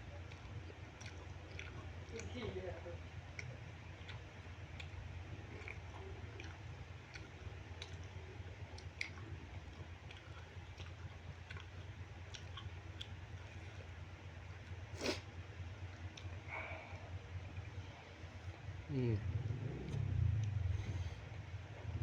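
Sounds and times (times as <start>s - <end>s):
close-up chewing: 0.0s - 22.0s
low hum: 0.0s - 22.0s
wet mouth clicks: 19.4s - 21.1s.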